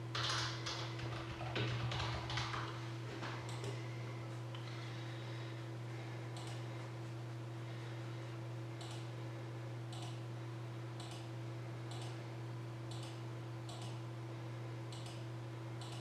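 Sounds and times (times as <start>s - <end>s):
low electrical hum: 0.0s - 16.0s
computer clicks: 6.4s - 6.6s, 8.8s - 9.1s, 9.9s - 10.2s, 11.0s - 11.3s, 11.9s - 12.2s, 12.9s - 14.0s, 14.9s - 15.2s, 15.8s - 16.0s.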